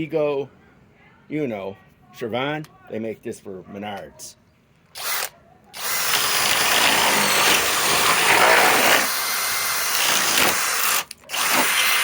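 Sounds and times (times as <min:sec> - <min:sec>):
cordless drill boring into wood: 0:05.0 - 0:12.0.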